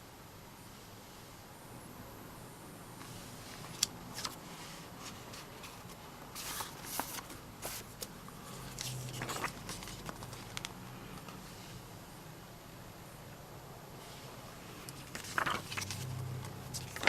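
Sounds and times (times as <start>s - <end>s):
pages turning rustle: 3.5s - 4.4s, 5.0s - 11.4s, 14.8s - 17.0s.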